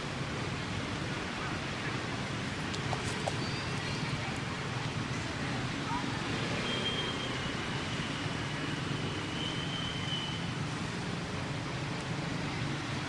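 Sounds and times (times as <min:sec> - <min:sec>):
rushing outdoor background noise: 0:00.0 - 0:13.0.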